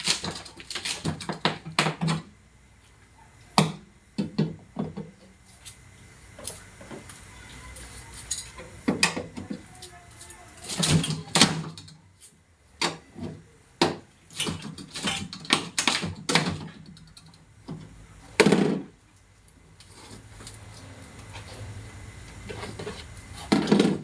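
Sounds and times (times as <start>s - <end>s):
refrigerator parts knocking: 3.6s - 5.2s, 12.8s - 17.0s, 23.4s - 24.0s.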